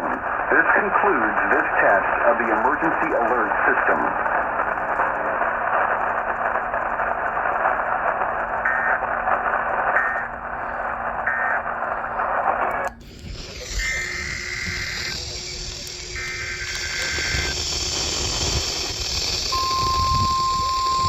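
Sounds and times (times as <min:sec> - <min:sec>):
radio static hiss: 0:00.0 - 0:21.0
warbling digital data bursts: 0:13.0 - 0:21.0.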